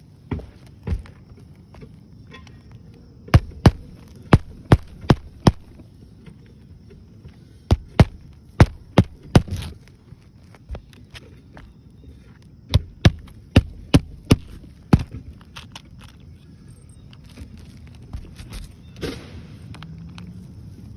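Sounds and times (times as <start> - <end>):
hammer striking roofing nails: 3.3 - 5.8, 7.7 - 9.7, 12.7 - 15.2.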